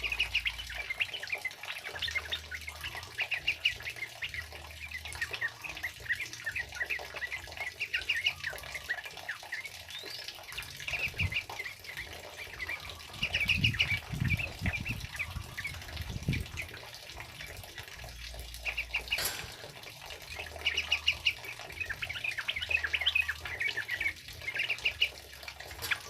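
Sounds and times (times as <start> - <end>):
bulbuls chattering: 0.0 - 26.0.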